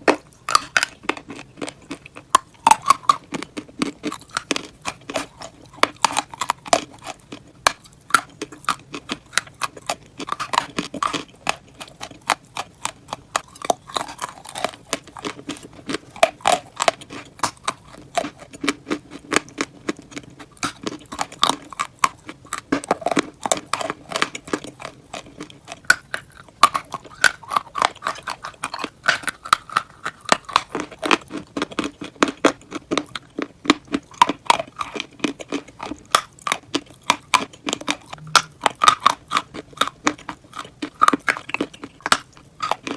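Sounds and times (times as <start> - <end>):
crunchy chewing: 0.0 - 42.9
wet mouth sounds: 33.1 - 42.9.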